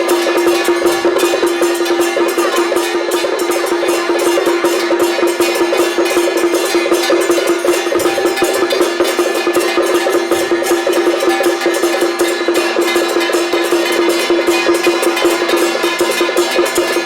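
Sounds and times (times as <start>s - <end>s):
fast percussion strikes: 0.0s - 17.0s
steady held tone: 0.0s - 17.0s.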